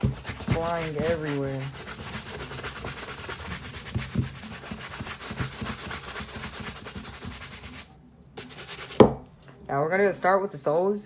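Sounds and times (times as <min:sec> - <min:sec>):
brush scrubbing shoe: 0:00.0 - 0:09.0.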